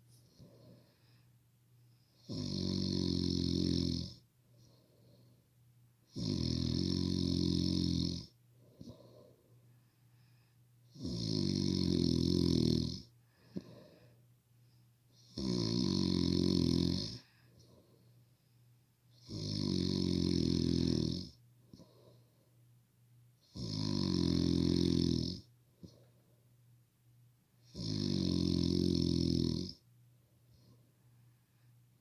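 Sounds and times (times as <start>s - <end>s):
heavy snoring: 2.2s - 4.2s, 6.1s - 9.0s, 10.9s - 13.8s, 15.2s - 17.2s, 19.2s - 21.4s, 23.5s - 25.5s, 27.7s - 29.8s.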